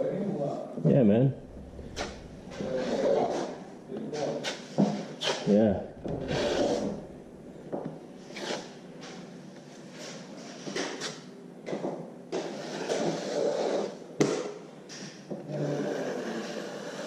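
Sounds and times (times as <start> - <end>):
knife scraping cement on plasterboard: 12.4 - 14.0, 15.6 - 17.0.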